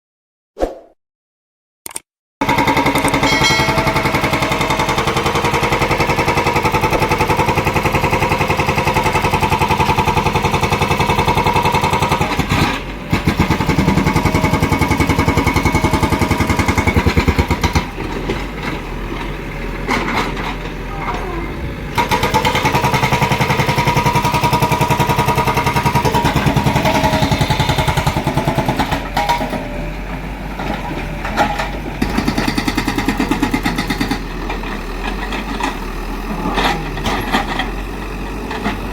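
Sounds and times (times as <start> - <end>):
backhoe diesel engine working: 2.4 - 38.9.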